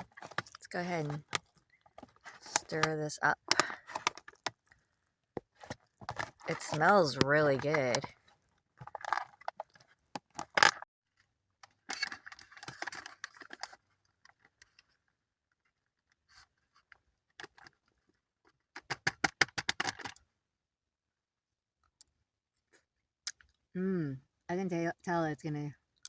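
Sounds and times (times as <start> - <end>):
bag crinkling: 0.0 - 2.8, 5.6 - 8.1
spoon scraping in pouch: 0.0 - 2.9, 5.4 - 8.1.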